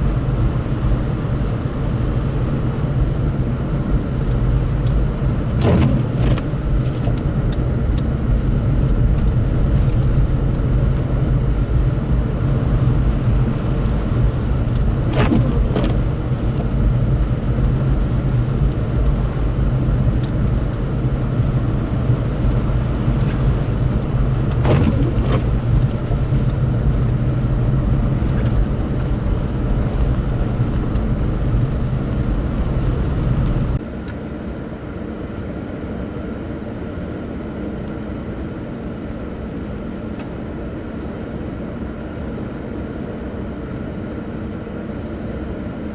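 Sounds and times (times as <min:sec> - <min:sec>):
vehicle engine rumbling: 0:00.0 - 0:34.7.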